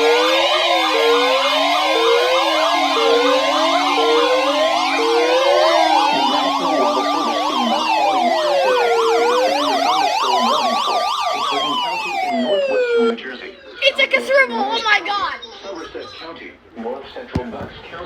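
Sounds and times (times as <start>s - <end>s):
steady high tone: 0.0s - 12.9s
siren slow wail: 0.0s - 13.8s
siren warbling yelps: 0.0s - 14.6s.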